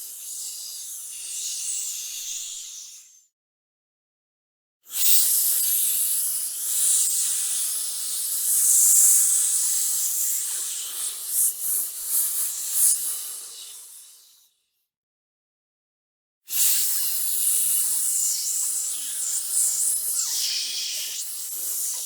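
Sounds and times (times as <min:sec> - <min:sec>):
person hissing through teeth: 0:18.7 - 0:22.0.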